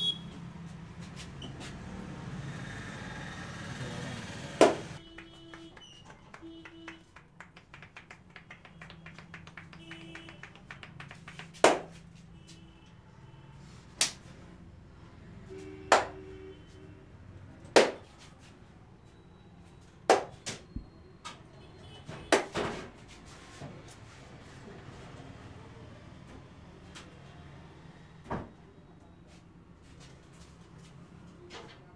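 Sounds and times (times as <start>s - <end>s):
hand claps on head: 4.6s - 12.1s, 14.0s - 14.2s, 15.9s - 16.2s, 17.8s - 18.0s, 20.1s - 20.6s, 22.3s - 22.6s
fingertip tapping on head: 7.4s - 11.9s.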